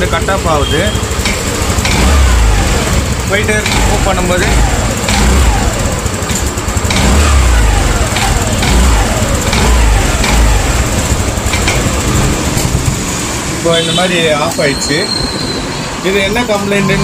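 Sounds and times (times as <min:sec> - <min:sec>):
scooter engine misfiring: 0:00.0 - 0:14.7.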